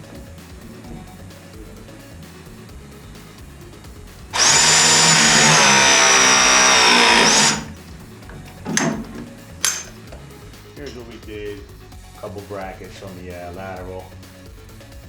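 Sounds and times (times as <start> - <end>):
power tool motor whining: 4.4 - 7.8.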